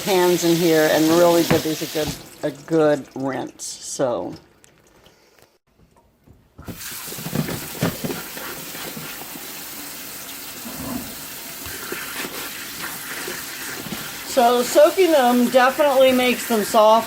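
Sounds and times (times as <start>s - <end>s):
tap water splashing: 0.1s - 3.6s.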